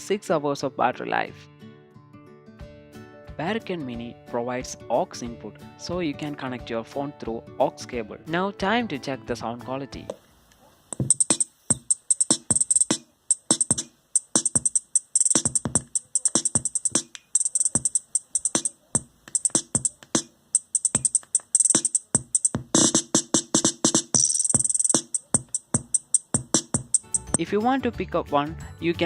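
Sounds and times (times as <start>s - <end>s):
electronic music with drum-machine beat: 11.0s - 27.4s.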